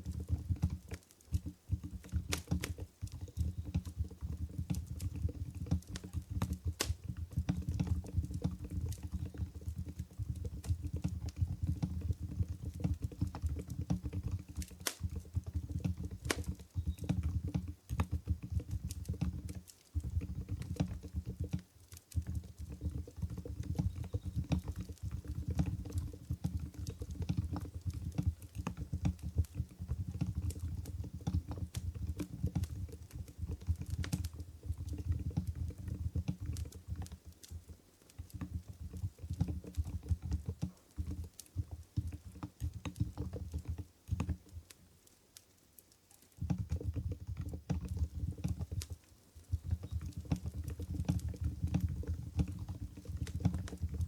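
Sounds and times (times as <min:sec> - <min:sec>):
campfire crackling: 0:00.1 - 0:16.9.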